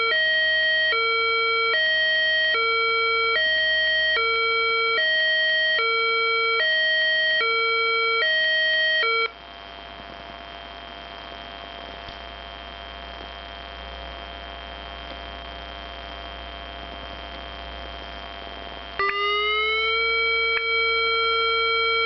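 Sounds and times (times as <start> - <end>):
two-tone electronic siren wail: 0.0 - 9.3, 19.0 - 22.0
faint electronic hum: 0.0 - 22.0.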